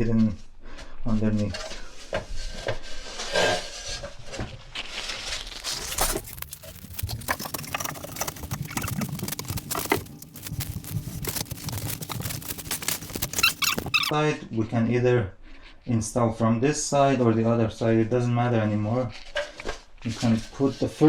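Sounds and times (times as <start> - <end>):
flooring planks clicking and scraping: 6.0 - 14.1.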